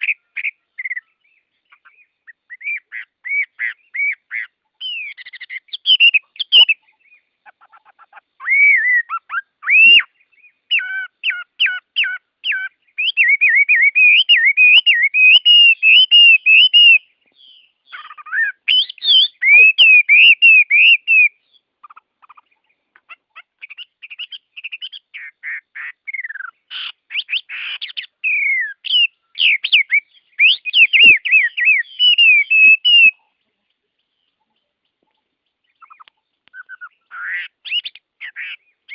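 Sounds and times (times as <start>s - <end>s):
songbirds singing: 0.0s - 38.9s.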